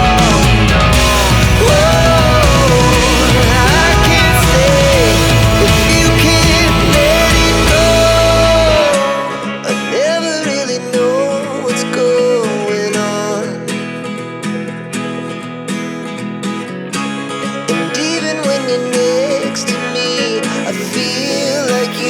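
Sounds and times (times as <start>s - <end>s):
person singing: 0.0s - 13.6s, 17.7s - 22.0s
acoustic guitar: 0.0s - 22.0s.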